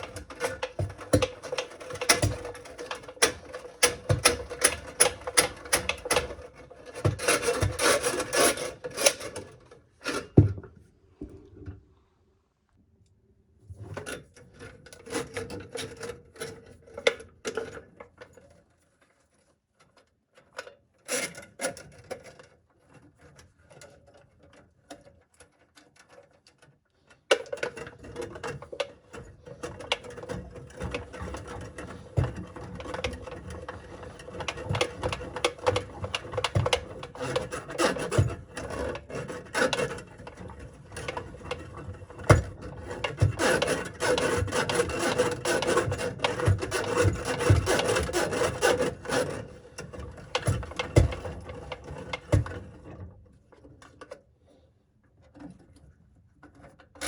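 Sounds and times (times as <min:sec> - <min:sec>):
drain snake cable scraping in pipe: 0:29.4 - 0:52.2.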